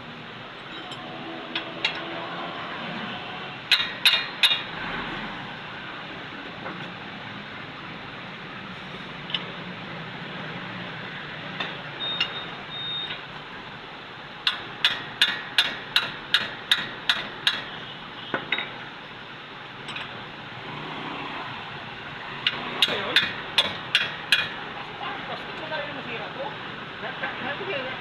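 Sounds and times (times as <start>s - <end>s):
hammer striking metal: 3.7s - 4.6s, 14.5s - 17.7s, 22.5s - 24.6s.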